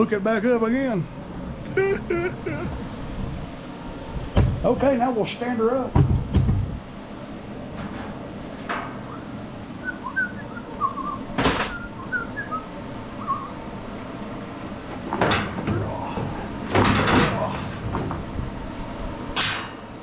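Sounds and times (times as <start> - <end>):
lawn mower knocks and rattles: 14.9 - 18.5.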